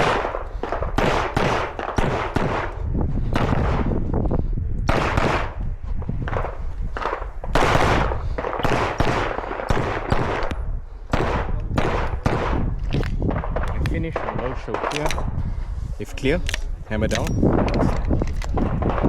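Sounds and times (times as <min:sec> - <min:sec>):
handgun shots: 0:14.8 - 0:15.2.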